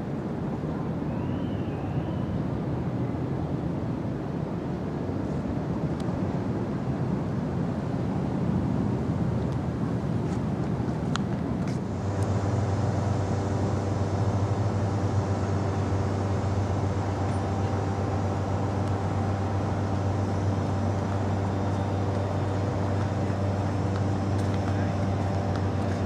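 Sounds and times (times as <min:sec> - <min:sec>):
large engine humming: 0:11.0 - 0:26.0.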